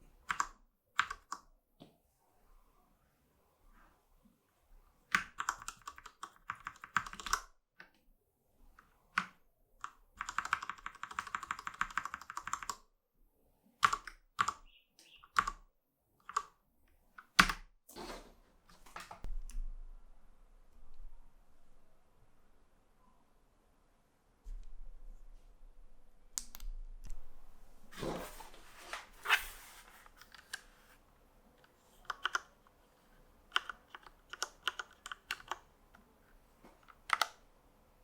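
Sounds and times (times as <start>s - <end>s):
mechanical keyboard typing: 0.3s - 1.5s, 5.1s - 7.5s, 9.1s - 12.9s, 13.8s - 14.6s, 15.3s - 15.6s, 16.2s - 16.6s, 32.0s - 32.7s, 33.5s - 35.7s, 36.8s - 37.4s.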